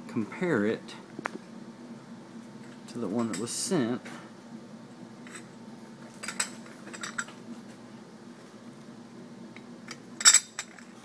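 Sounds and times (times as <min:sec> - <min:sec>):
metal parts clinking: 0:10.2 - 0:10.9.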